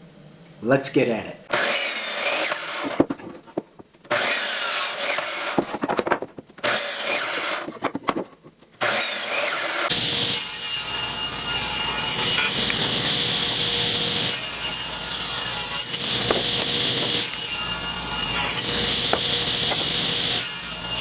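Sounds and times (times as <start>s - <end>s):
power saw cutting wood: 1.5s - 3.0s, 4.1s - 5.7s, 6.6s - 7.8s, 8.8s - 21.0s.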